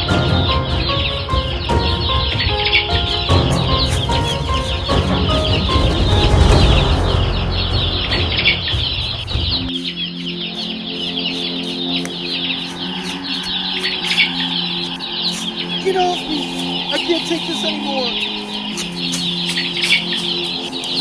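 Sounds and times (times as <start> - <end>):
heavy low rumble: 0.0 - 9.7
sustained low notes: 0.0 - 10.2
background music: 0.0 - 21.0
many birds chirping: 0.0 - 21.0.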